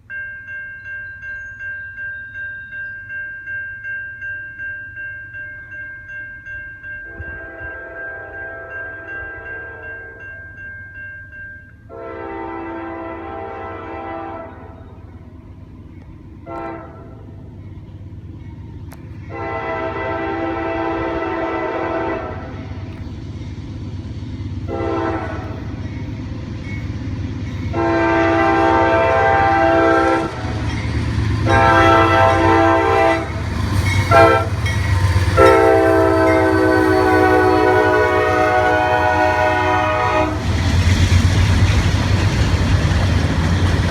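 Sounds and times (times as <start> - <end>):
locomotive air horn blasts: 7.1 - 10.2, 11.9 - 14.8, 16.4 - 17.2, 19.3 - 22.7, 24.7 - 25.7, 27.7 - 30.6, 31.4 - 40.5
locomotive engine rumble: 12.0 - 43.9.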